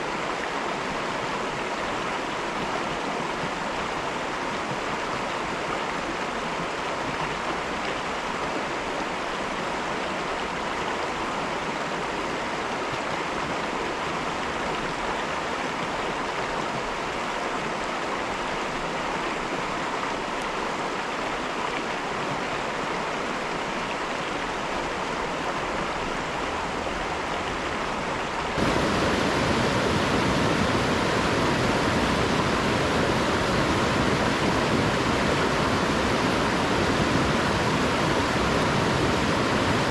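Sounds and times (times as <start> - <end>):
river water rushing: 17.9 - 39.9.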